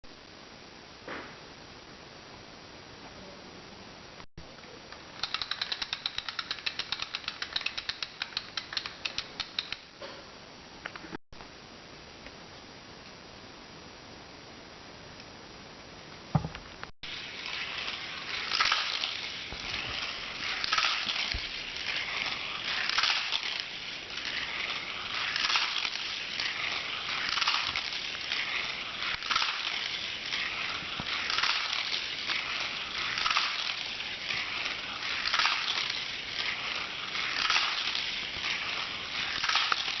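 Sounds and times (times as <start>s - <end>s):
toy cars rolling on plastic track: 5.1s - 9.8s, 17.0s - 40.0s.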